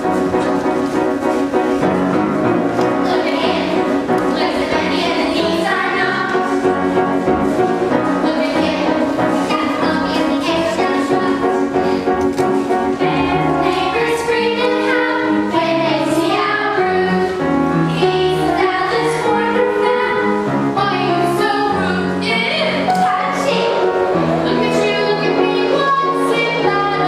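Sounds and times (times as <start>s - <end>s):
instrumental accompaniment: 0.0s - 27.0s
young voices singing in chorus: 13.0s - 23.8s.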